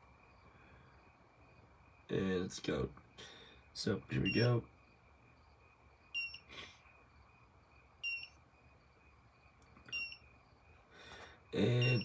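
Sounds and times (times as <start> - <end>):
faint steady high tone: 3.5 - 10.7, 11.5 - 12.0
high-pitched electronic beeps: 4.2 - 4.6, 6.2 - 6.5, 8.0 - 8.4, 9.9 - 10.2, 11.6 - 12.0.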